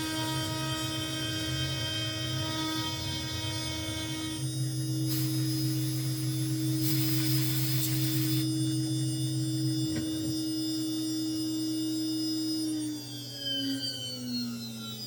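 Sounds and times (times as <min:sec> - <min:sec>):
spindle humming and whining: 0:00.0 - 0:15.0
hiss: 0:05.1 - 0:08.5.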